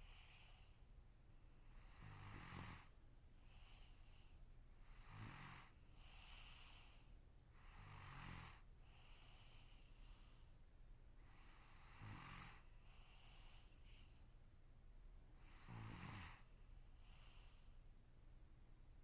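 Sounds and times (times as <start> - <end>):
person snoring quietly: 1.6 - 4.2, 4.8 - 10.4, 11.2 - 14.1, 15.4 - 17.7
soft breathing out: 5.6 - 7.9, 8.5 - 10.6, 11.2 - 14.3, 15.4 - 17.8.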